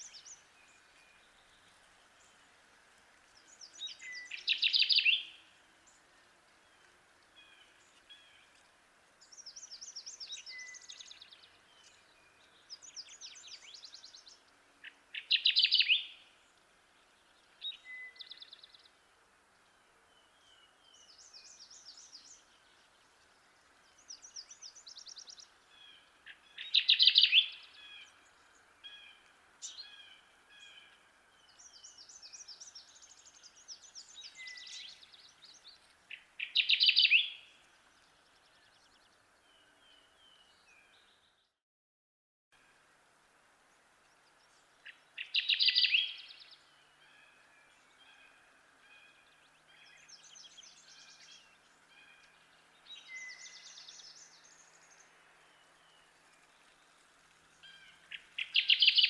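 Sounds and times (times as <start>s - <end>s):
steady background hiss: 0.0s - 40.5s, 42.6s - 59.0s
bird singing loud short song: 3.5s - 5.4s, 15.1s - 16.2s, 23.9s - 41.6s, 44.1s - 48.3s, 48.9s - 56.9s, 57.6s - 59.0s.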